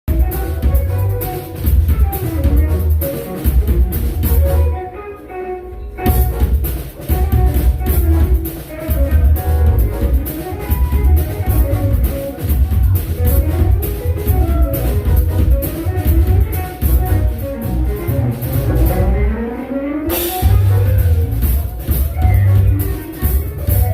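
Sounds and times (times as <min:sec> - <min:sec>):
drum kit: 0:00.0 - 0:05.0, 0:05.9 - 0:23.9
jazz band playing: 0:00.1 - 0:23.9
pulsing bass line: 0:09.0 - 0:19.4, 0:20.2 - 0:23.9.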